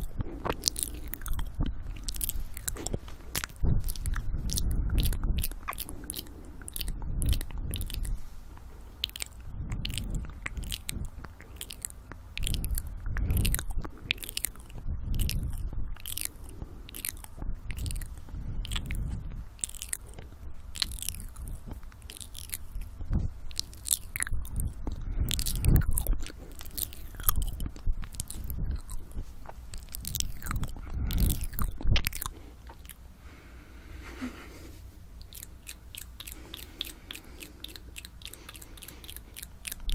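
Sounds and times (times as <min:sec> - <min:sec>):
heavy breathing: 0:00.0 - 0:11.7, 0:16.2 - 0:20.5, 0:30.3 - 0:35.1, 0:36.0 - 0:39.9
wet mouth clicks and smacks: 0:00.0 - 0:33.0, 0:35.2 - 0:39.9.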